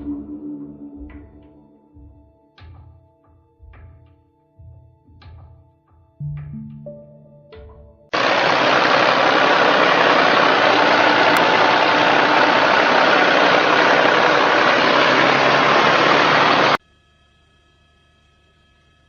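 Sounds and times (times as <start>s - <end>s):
farm machine engine running: 8.2s - 16.8s.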